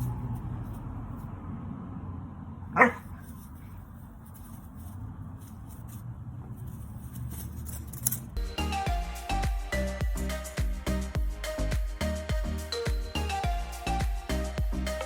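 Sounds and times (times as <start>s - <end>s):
dog barking: 2.7s - 3.2s.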